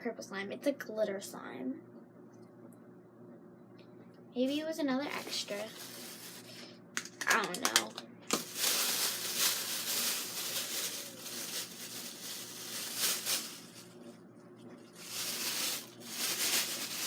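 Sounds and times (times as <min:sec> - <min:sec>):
faint steady hum: 0:00.0 - 0:17.0
package rustling: 0:05.1 - 0:14.0, 0:14.9 - 0:17.0.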